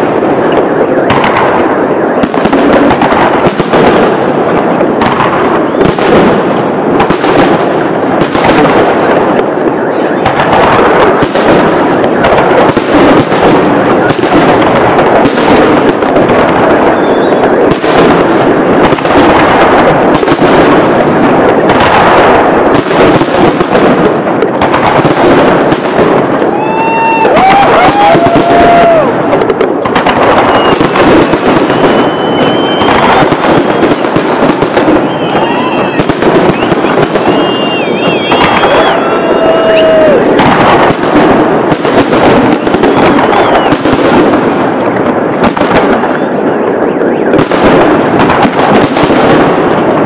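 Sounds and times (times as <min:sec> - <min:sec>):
fireworks bangs and crackling: 0:00.0 - 0:50.0
wavering firework whistles: 0:09.7 - 0:10.5, 0:16.8 - 0:17.7, 0:26.4 - 0:29.3, 0:30.1 - 0:40.3, 0:41.9 - 0:44.1.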